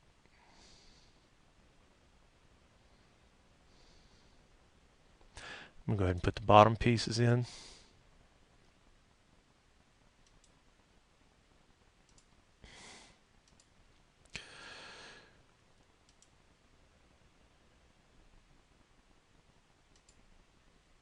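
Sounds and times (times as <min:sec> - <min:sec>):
faint mouse clicks: 0:10.2 - 0:10.6, 0:12.0 - 0:12.4, 0:13.4 - 0:14.4, 0:16.0 - 0:16.4, 0:19.9 - 0:20.3.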